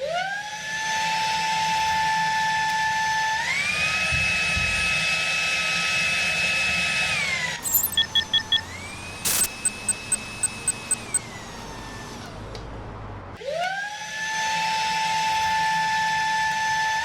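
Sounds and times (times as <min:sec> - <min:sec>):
short beeps: 0:07.6 - 0:08.6, 0:09.3 - 0:11.2.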